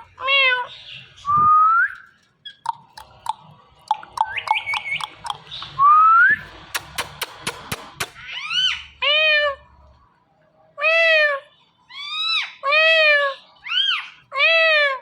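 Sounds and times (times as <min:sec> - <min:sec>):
parrot clicks and chirps: 0:01.9 - 0:05.8, 0:06.7 - 0:08.3
parrot whistling: 0:03.3 - 0:06.5
sharp clicks: 0:06.7 - 0:08.2.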